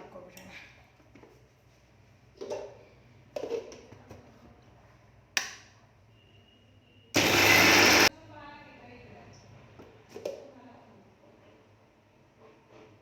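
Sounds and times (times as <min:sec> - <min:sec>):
mixer grinder whirring: 0:07.2 - 0:08.1.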